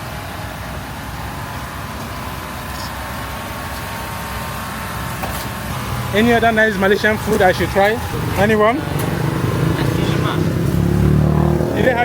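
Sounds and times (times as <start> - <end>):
busy street bazaar din: 5.2 - 12.0.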